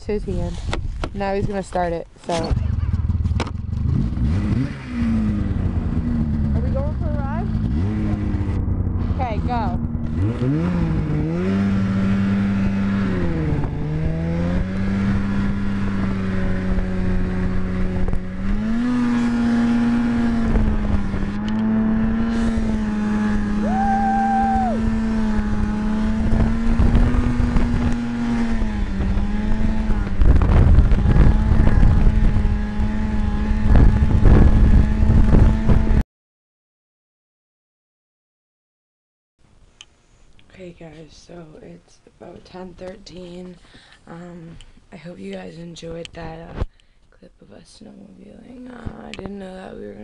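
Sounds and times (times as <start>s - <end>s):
snowmobile engine running: 1.2s - 36.0s.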